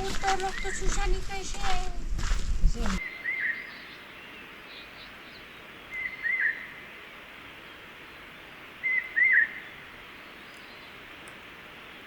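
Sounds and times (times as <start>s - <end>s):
steady background hiss: 2.0s - 12.0s
bird whistled call: 3.0s - 3.8s, 5.9s - 6.8s, 8.8s - 9.7s.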